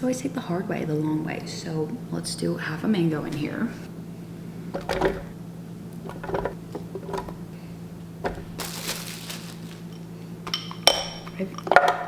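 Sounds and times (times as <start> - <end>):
fruit knocking into plastic jar: 8.2 - 8.7.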